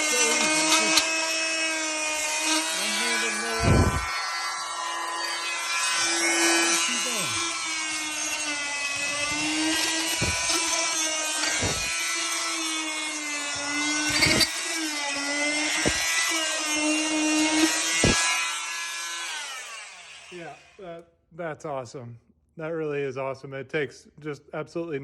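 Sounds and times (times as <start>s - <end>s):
blade scraping adhesive: 0.0s - 19.0s
multi-tool buzzing hum: 0.0s - 20.8s.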